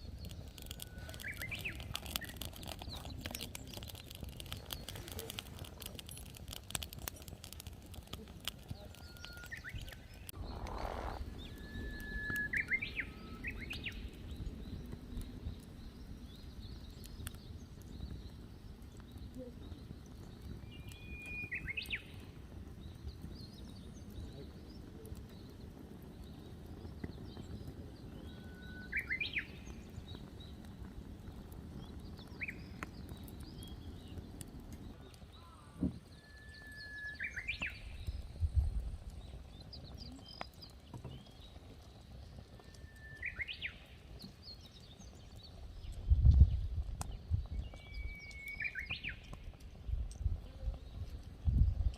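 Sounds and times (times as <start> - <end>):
songbird singing: 0.0 - 51.9.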